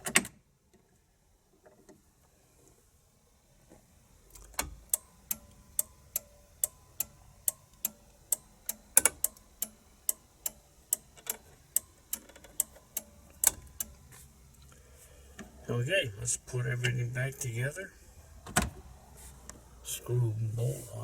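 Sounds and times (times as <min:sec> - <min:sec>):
turn signal relay clicking: 0:04.3 - 0:14.3.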